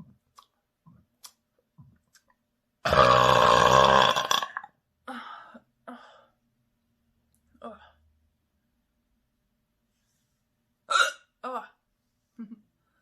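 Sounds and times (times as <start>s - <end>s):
long loud burp: 2.8s - 4.8s.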